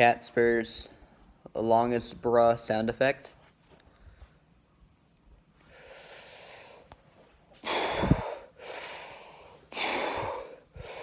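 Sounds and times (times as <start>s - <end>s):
man breathing deeply: 5.6s - 11.0s.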